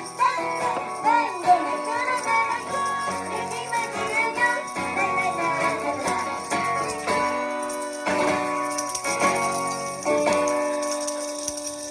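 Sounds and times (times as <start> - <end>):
light jingling: 0.0 - 11.9
ukulele chords strummed: 0.0 - 11.9.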